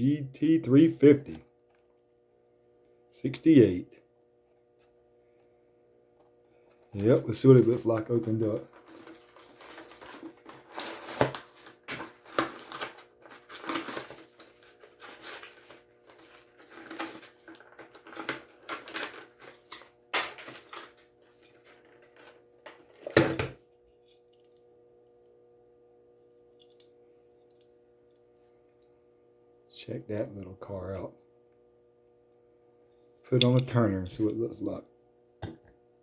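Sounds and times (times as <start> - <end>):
plastic packaging crinkling: 7.0 - 23.2.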